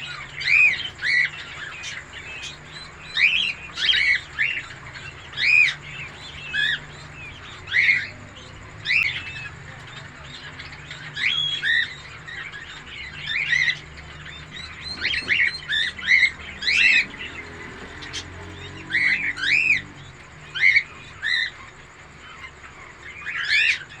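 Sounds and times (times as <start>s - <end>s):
peacock chicks peeping: 0.0s - 24.0s.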